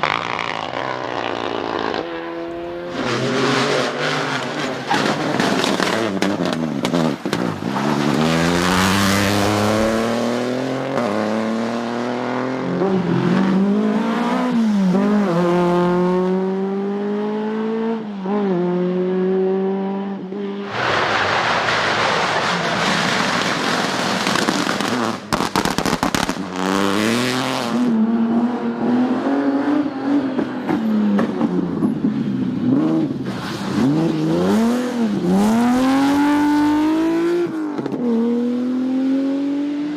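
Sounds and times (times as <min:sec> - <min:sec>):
rally car engines revving: 0:00.0 - 0:39.9
rushing noise: 0:20.6 - 0:24.4
sharp cracks: 0:20.8 - 0:26.5.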